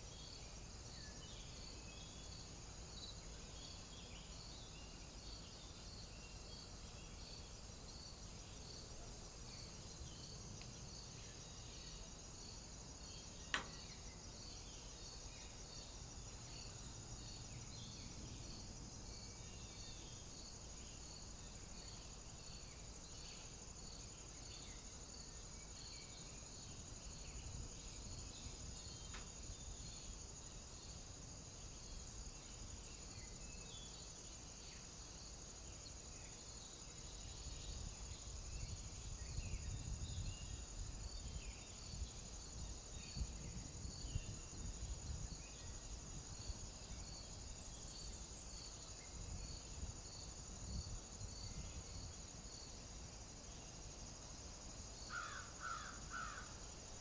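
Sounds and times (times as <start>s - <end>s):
insects trilling: 0.0s - 57.0s
pulsed insect chirp: 9.4s - 57.0s
wind rumble on microphone: 37.5s - 47.4s, 49.1s - 52.3s.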